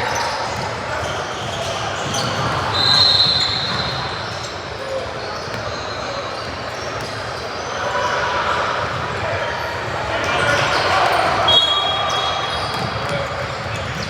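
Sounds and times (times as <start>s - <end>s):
whistle blast: 2.7s - 4.0s, 11.5s - 12.4s
basketball bouncing on court: 12.6s - 14.0s.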